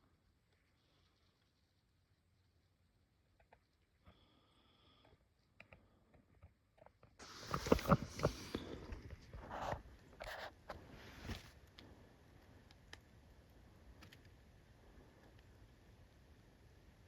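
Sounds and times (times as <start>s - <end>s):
faint clicks: 11.6s - 13.1s, 13.9s - 14.4s.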